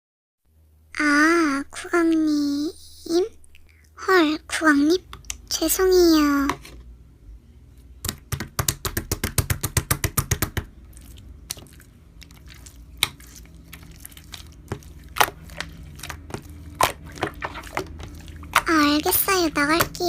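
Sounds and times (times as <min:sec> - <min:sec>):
slime squishing and popping: 0:08.0 - 0:20.0.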